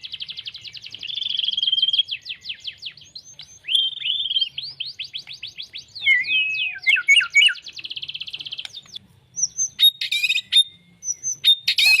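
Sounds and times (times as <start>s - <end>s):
songbird singing: 0.0s - 12.0s.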